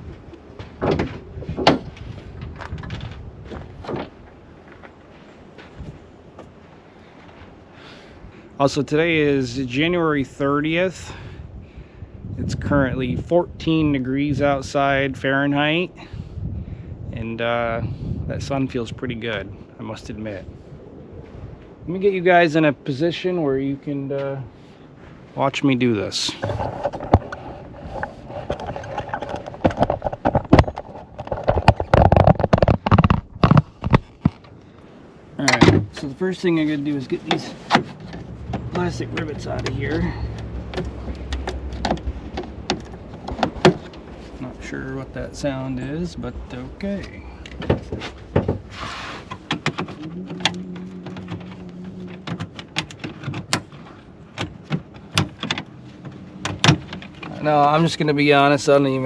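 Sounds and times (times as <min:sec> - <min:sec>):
low steady hum: 0:15.6 - 0:59.0
camera handling knocks and clicks: 0:28.0 - 0:34.5.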